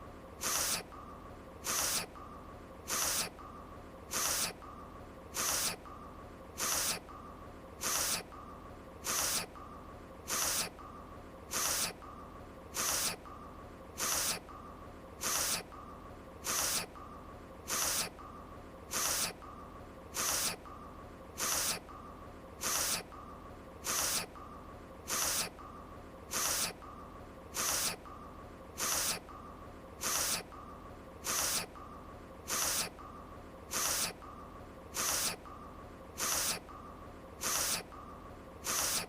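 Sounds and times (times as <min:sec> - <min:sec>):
woman sniffing: 0:00.4 - 0:00.9, 0:01.6 - 0:02.1, 0:02.9 - 0:03.3, 0:04.1 - 0:04.6, 0:05.4 - 0:05.8, 0:06.6 - 0:07.0, 0:07.8 - 0:08.3, 0:09.0 - 0:09.5, 0:10.3 - 0:10.7, 0:11.5 - 0:12.0, 0:12.8 - 0:13.2, 0:14.0 - 0:14.4, 0:15.2 - 0:15.7, 0:16.4 - 0:16.9, 0:17.7 - 0:18.1, 0:20.2 - 0:20.6, 0:21.4 - 0:21.8, 0:22.6 - 0:23.1, 0:23.8 - 0:24.3, 0:25.1 - 0:25.5, 0:26.3 - 0:26.8, 0:27.6 - 0:28.0, 0:28.8 - 0:29.2, 0:30.0 - 0:30.5, 0:31.2 - 0:31.7, 0:32.5 - 0:32.9, 0:33.7 - 0:34.2, 0:35.0 - 0:35.4, 0:36.2 - 0:36.6, 0:37.4 - 0:37.9, 0:38.6 - 0:39.0.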